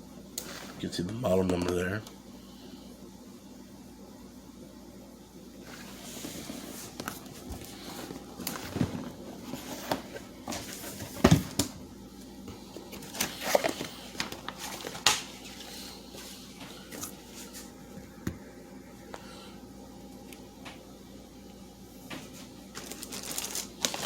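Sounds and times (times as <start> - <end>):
packaging rustling: 5.7 - 11.6, 12.8 - 17.6, 22.7 - 24.0.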